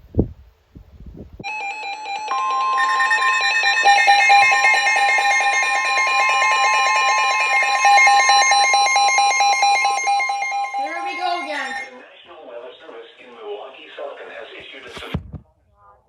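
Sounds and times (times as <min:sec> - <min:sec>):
pulsing alarm tone: 0:01.4 - 0:11.9
steady high tone: 0:01.4 - 0:12.0.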